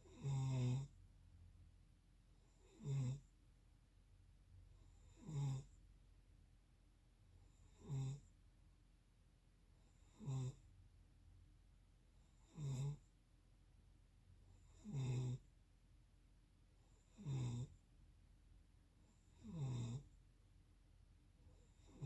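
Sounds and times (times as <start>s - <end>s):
person snoring: 0.0s - 0.9s, 17.1s - 17.8s, 19.3s - 20.1s.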